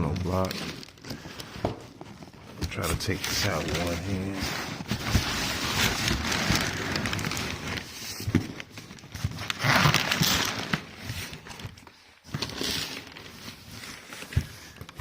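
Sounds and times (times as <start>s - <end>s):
cardboard box rustling and scraping: 3.3s - 8.6s.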